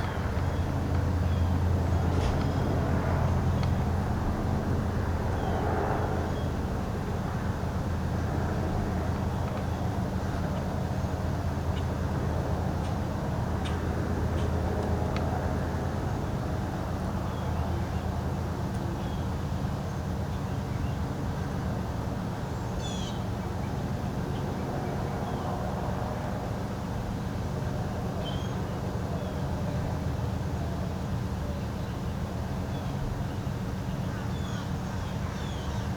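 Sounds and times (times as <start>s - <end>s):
propeller aircraft engine droning: 0.0s - 35.9s.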